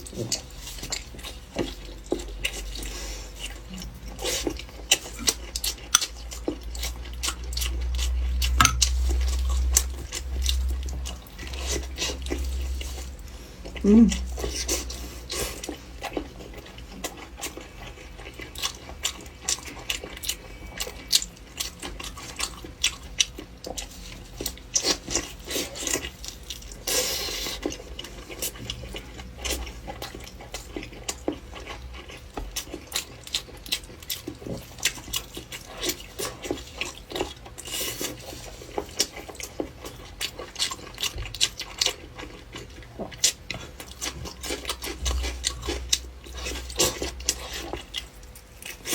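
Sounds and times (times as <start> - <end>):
chewing and smacking: 0.0 - 48.9.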